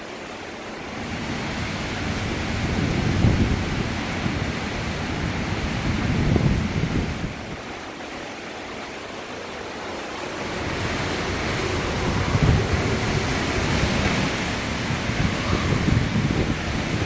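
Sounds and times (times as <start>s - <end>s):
hurricane wind gusting: 0.0s - 17.0s
wind buffets on microphone: 0.9s - 7.8s, 10.3s - 17.0s.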